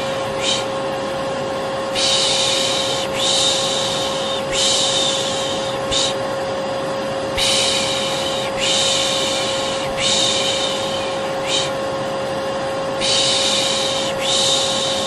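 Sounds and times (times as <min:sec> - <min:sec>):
person shushing: 0:00.0 - 0:00.8, 0:01.9 - 0:06.2, 0:07.4 - 0:11.8, 0:13.0 - 0:15.0
vacuum cleaner humming: 0:00.0 - 0:15.0.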